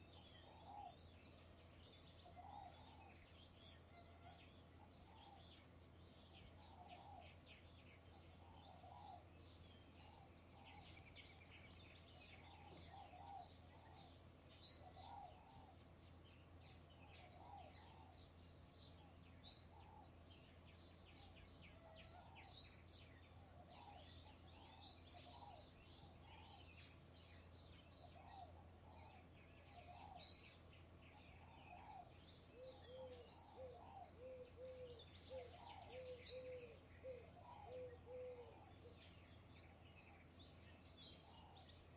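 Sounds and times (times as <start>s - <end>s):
small birds chirping: 0.0s - 41.9s
steady low hum: 0.0s - 41.9s
low bird call: 28.0s - 41.9s.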